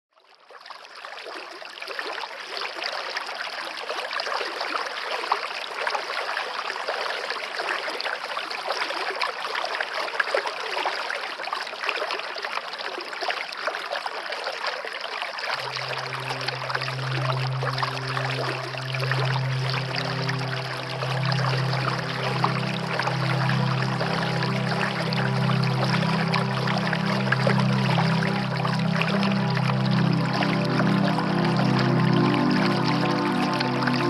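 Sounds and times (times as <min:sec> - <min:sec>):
rushing splashing water: 0:00.8 - 0:34.0
low musical drone: 0:15.6 - 0:34.0.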